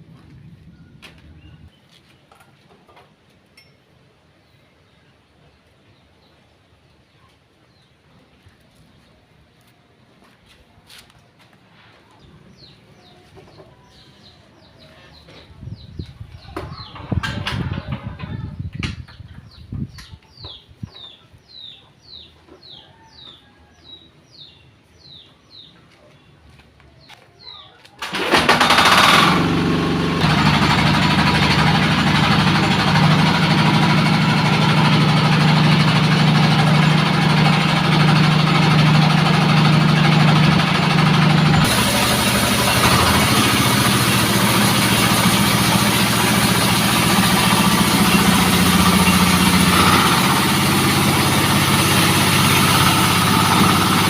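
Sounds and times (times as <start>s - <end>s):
sawmill engine running: 28.0s - 54.0s.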